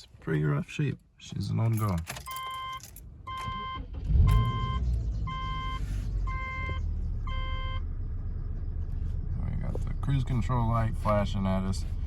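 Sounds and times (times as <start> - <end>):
car engine cranking and idling: 0.4 - 12.0
car warning chime beeping: 2.2 - 7.9.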